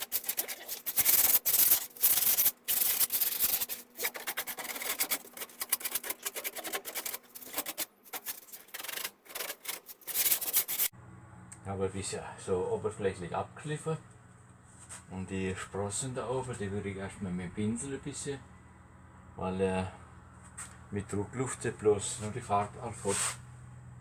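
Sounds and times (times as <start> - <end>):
sandpaper rubbing on painted wood: 0.0 - 10.9.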